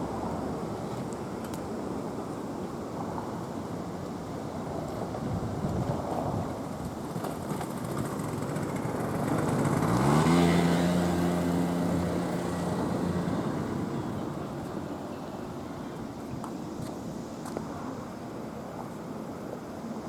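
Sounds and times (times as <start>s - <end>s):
vehicle passing by: 8.2s - 15.1s.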